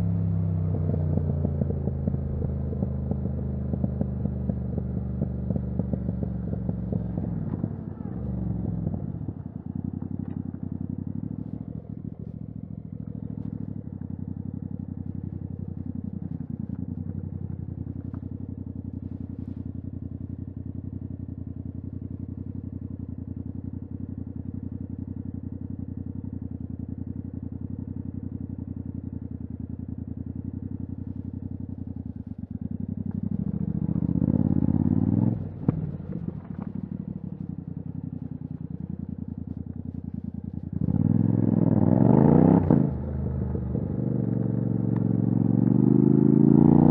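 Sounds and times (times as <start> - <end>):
motorcycle engine: 0.0 - 46.9.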